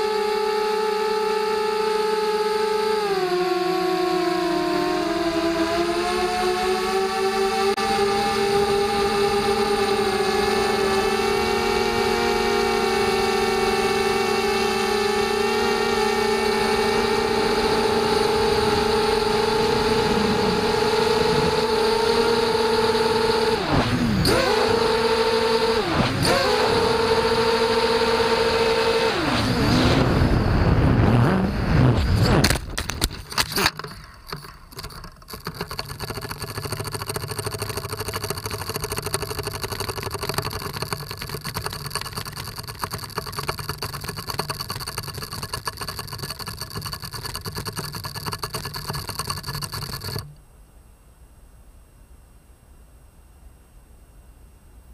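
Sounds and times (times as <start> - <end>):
quadcopter motors whining: 0.0 - 50.4.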